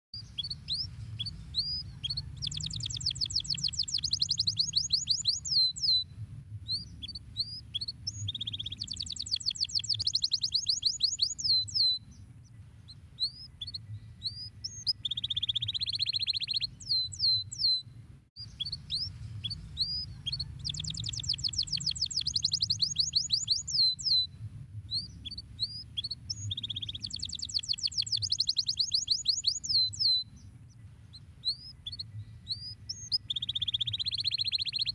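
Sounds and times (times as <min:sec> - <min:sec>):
canary singing trills: 0:00.2 - 0:24.3, 0:24.9 - 0:34.9.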